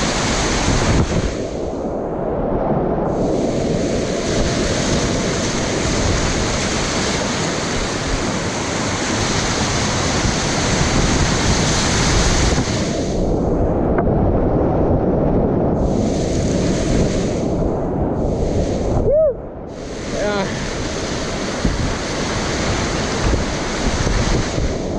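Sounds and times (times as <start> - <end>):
wind buffeting microphone: 0.0 - 24.9
river whitewater rushing: 3.2 - 13.2, 19.7 - 24.9.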